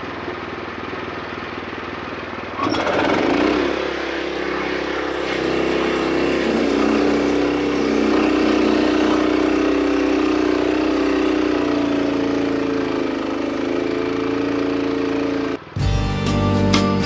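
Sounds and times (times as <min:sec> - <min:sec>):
sawmill engine running: 0:00.0 - 0:15.8.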